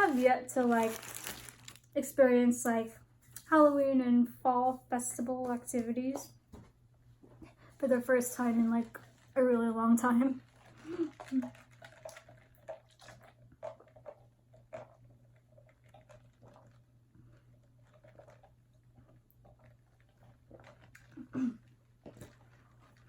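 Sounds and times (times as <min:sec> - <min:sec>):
person chewing: 0:10.5 - 0:22.5.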